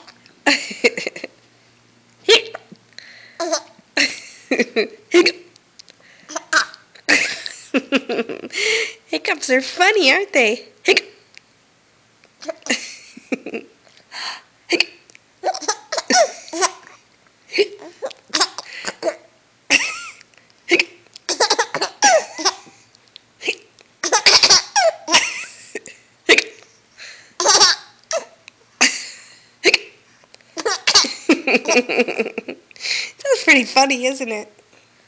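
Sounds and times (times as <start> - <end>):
little girl laughing: 6.3 - 8.5, 15.4 - 16.9, 17.6 - 22.7, 24.0 - 25.8
girl hiccupping: 17.6 - 19.3, 26.3 - 26.7.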